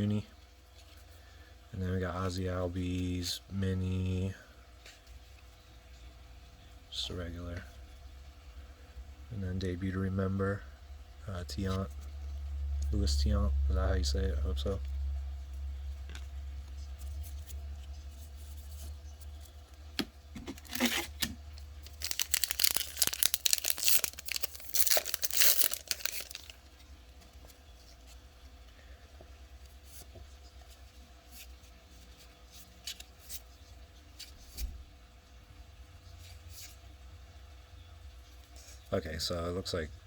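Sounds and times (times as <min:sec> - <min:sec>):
foil wrapper tearing and crinkling: 0:20.4 - 0:26.6.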